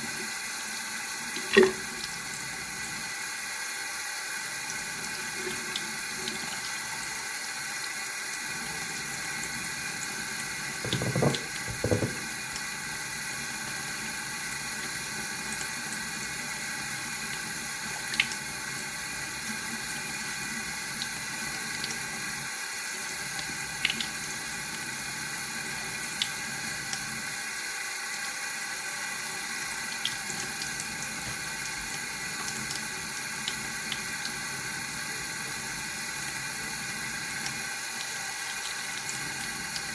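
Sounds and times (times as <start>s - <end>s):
tap water running into sink: 0.0s - 3.8s, 4.4s - 7.7s, 8.4s - 27.4s, 29.0s - 39.9s.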